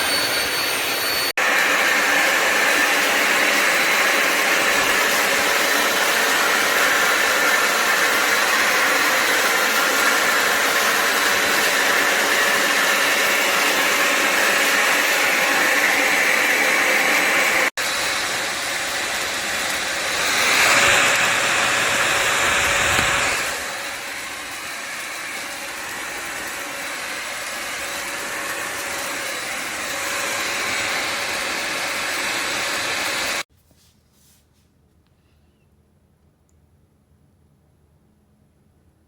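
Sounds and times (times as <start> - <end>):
vacuum motor whine: 0.0 - 33.4.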